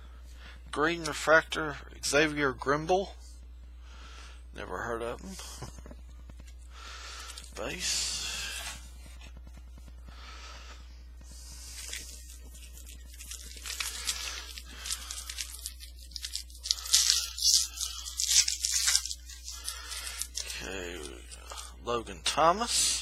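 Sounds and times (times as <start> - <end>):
wrapper crinkling: 11.6 - 21.8
foil pack tearing: 11.7 - 21.7.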